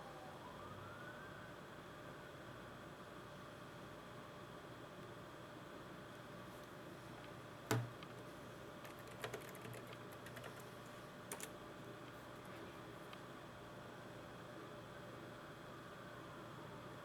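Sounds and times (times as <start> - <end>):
computer keys clicking: 8.8 - 10.7, 11.3 - 11.6.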